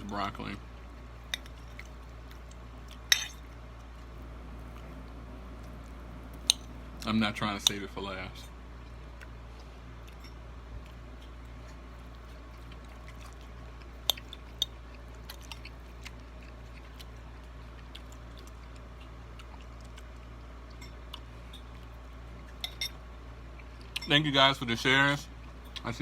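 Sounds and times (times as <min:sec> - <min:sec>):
low hum: 0:00.0 - 0:24.1
person chewing food: 0:00.6 - 0:07.0, 0:08.8 - 0:24.1.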